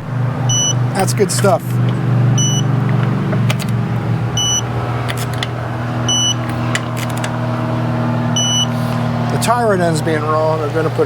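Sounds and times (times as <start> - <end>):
low mechanical hum: 0.0 - 11.0
sharp clicks: 1.4 - 3.8, 4.4 - 7.4.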